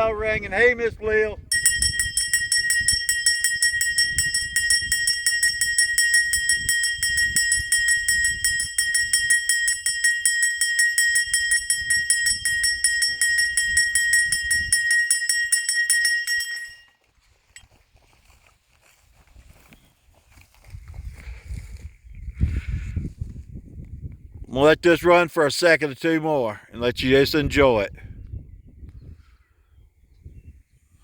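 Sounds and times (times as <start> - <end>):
bell rung rapidly: 1.5 - 16.9.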